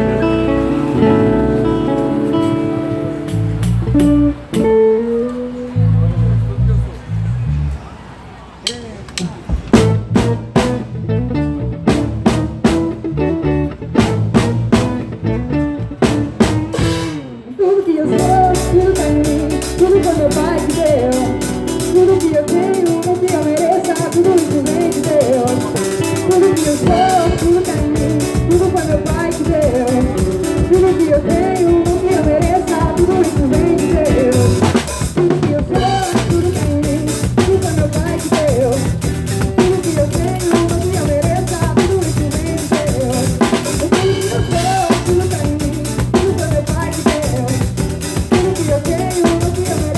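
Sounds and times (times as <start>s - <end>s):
live band playing: 0.0s - 7.9s, 8.7s - 49.9s
drum kit beat: 2.1s - 5.2s, 8.6s - 11.0s, 11.8s - 13.3s, 13.9s - 17.4s, 18.2s - 49.9s.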